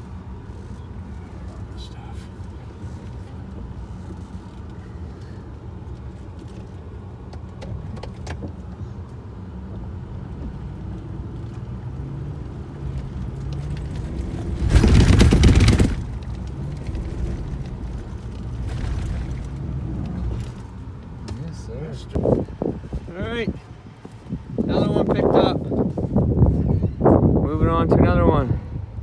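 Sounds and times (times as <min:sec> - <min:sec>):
truck engine running under load: 0:00.0 - 0:24.4
loud rushing noise: 0:13.8 - 0:17.5.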